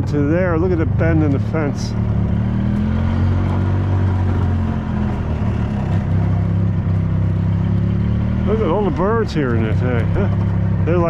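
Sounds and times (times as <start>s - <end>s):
utility cart engine running: 0.0s - 11.0s.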